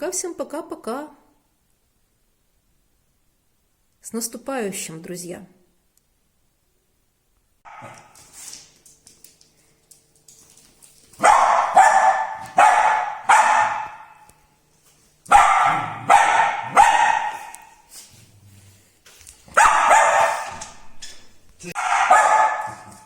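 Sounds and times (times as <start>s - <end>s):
dog barking sharply: 7.6s - 8.2s, 11.2s - 14.3s, 15.3s - 17.8s, 19.5s - 20.7s, 21.8s - 23.0s.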